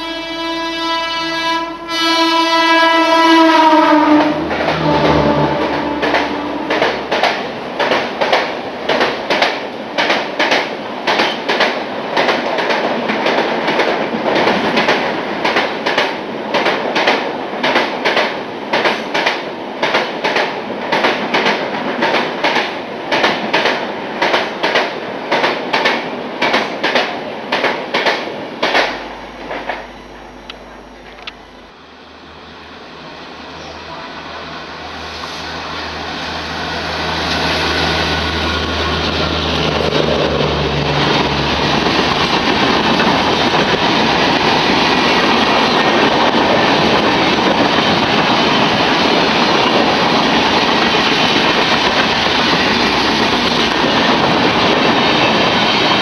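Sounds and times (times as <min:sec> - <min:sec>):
locomotive horn blowing: 0:00.0 - 0:07.1
train wheels clattering over rail joints: 0:04.2 - 0:29.8, 0:39.0 - 0:56.0.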